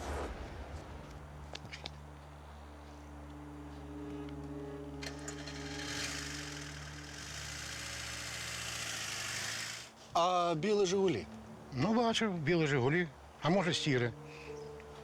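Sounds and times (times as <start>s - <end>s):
high hiss: 4.8s - 11.7s
car engine idling: 5.0s - 9.9s.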